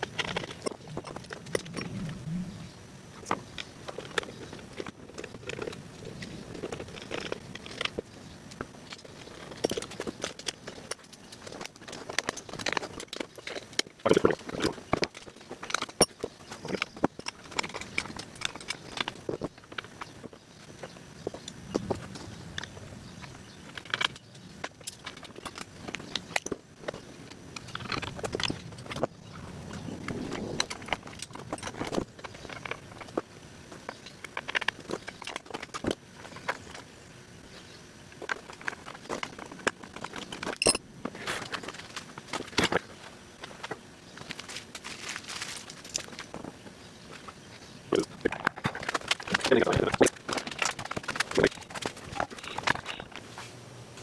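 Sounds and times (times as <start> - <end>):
tools and hardware clicking: 3.2 - 37.0, 38.1 - 53.2
metallic clinks of tools: 40.5 - 40.8.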